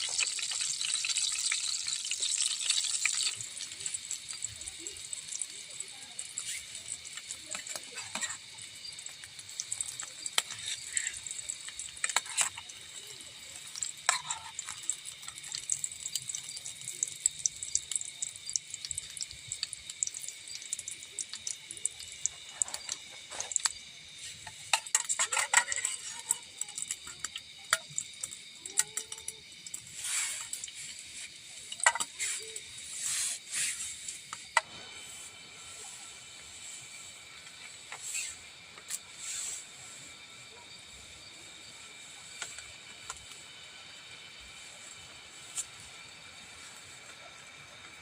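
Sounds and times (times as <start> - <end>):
utensils clicking and scraping: 0.0 - 17.4, 21.2 - 34.7.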